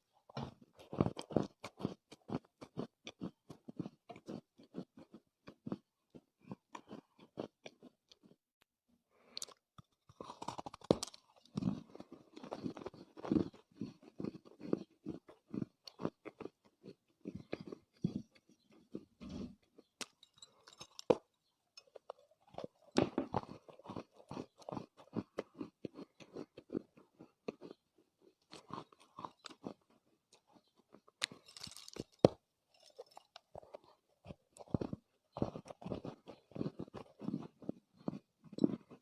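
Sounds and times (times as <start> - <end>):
person chewing clay: 0.0 - 8.4, 9.2 - 39.0.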